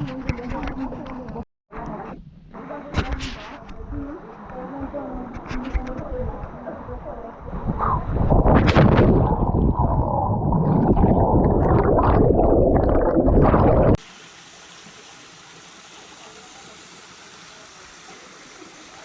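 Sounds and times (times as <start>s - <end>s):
muffled underwater churning: 7.4s - 14.2s
stream and waterfall rushing: 14.0s - 19.0s.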